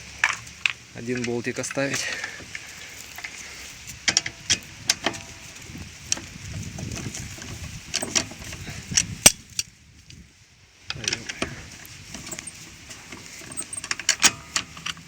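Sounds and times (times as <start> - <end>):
metal tools clinking and rattling: 7.0 - 8.7, 11.0 - 15.0.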